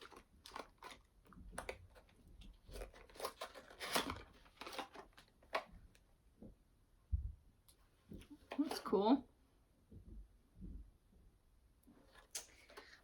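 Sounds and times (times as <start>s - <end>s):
packaging tearing and crinkling: 0.0s - 5.7s.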